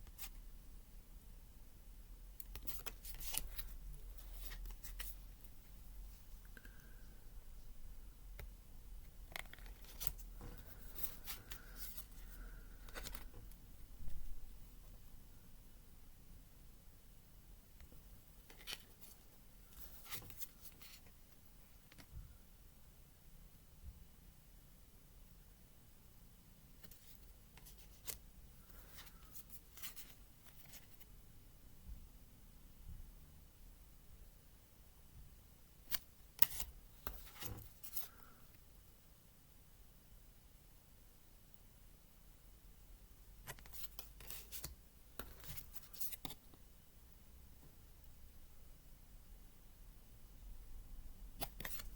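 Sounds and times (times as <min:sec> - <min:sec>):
cards scraping and flicking: 0:02.5 - 0:05.2, 0:09.3 - 0:12.2, 0:35.9 - 0:38.3, 0:43.4 - 0:46.4, 0:51.4 - 0:51.9.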